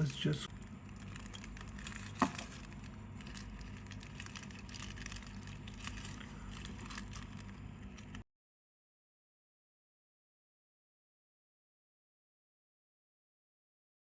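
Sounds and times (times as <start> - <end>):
handling clicks and crinkles: 0.0 - 8.2
steady low hum: 0.0 - 8.2.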